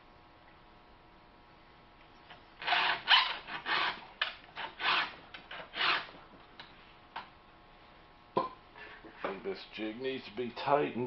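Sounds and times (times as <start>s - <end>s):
file rasping on chainsaw chain: 2.6s - 4.0s, 4.6s - 6.1s.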